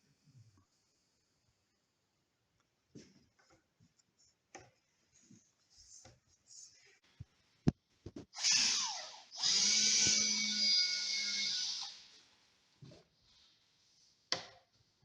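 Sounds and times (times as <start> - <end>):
power tool motor whining: 8.4 - 12.0.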